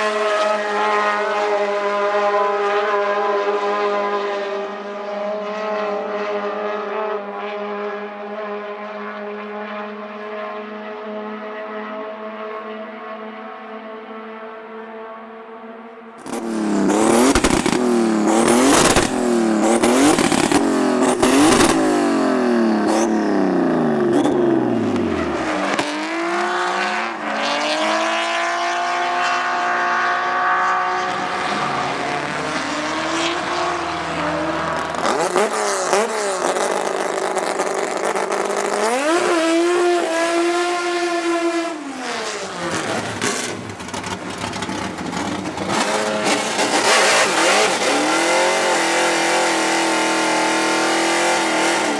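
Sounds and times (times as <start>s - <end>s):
racing car engines revving: 16.2s - 51.9s.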